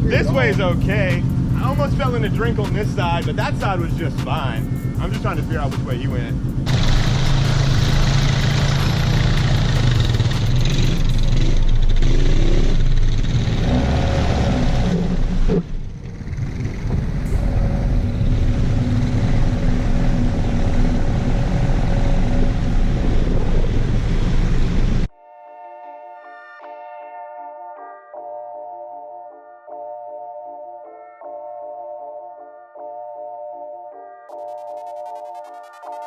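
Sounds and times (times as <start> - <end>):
car engine revving under load: 0.0 - 25.1.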